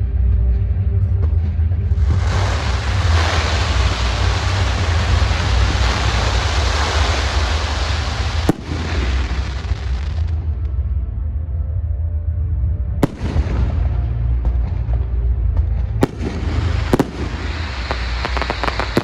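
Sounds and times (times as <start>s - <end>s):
firework hissing: 2.0s - 10.4s, 16.0s - 19.0s
firework bang: 2.1s - 10.3s, 16.0s - 19.0s.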